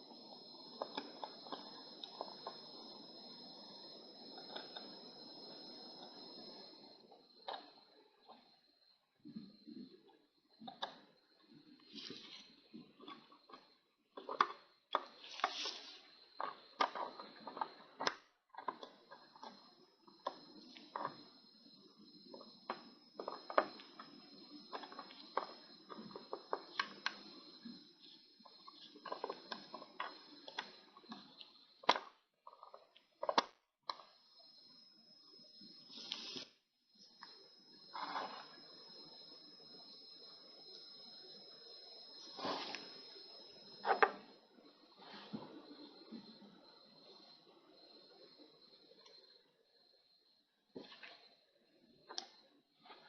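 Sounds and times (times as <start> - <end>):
faint high whine: 0.0 - 13.7, 34.0 - 53.0.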